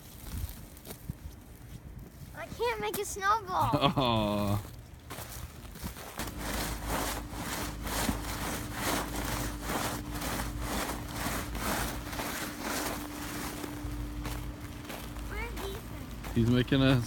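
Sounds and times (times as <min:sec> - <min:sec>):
crunchy snow scraping: 0:03.9 - 0:17.0.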